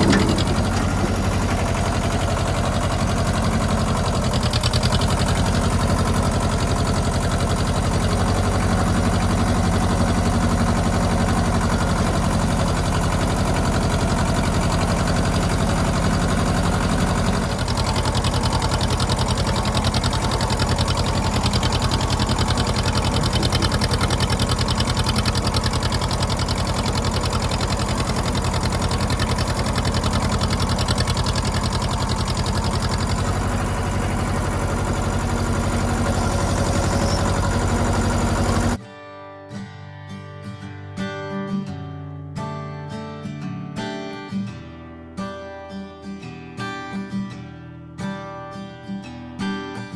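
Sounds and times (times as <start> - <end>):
tractor diesel engine running: 0.0 - 38.8.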